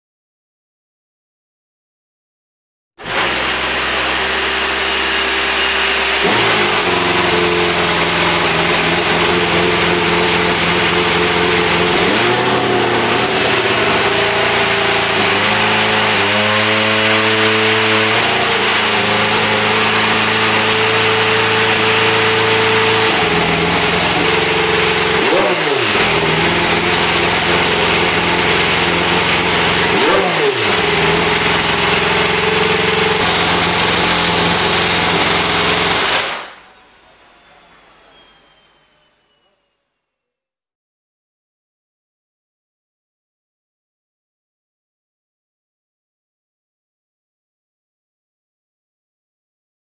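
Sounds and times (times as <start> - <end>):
racing engine starting and revving: 3.0 - 36.7.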